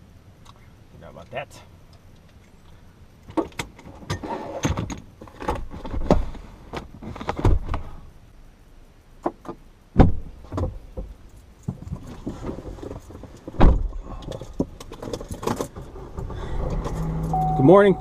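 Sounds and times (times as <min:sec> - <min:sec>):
heavy thump: 0:10.0 - 0:11.1, 0:13.5 - 0:14.0.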